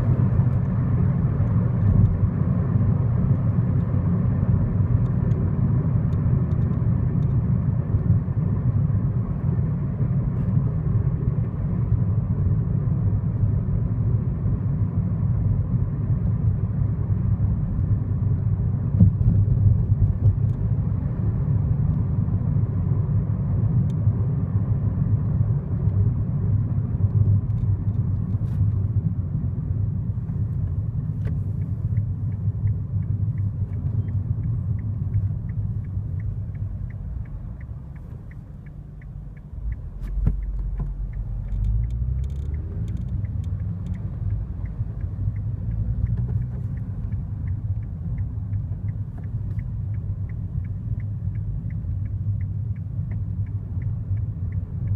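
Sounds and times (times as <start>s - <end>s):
road and engine rumble: 0.0s - 54.9s
faint high ticks: 30.5s - 54.9s.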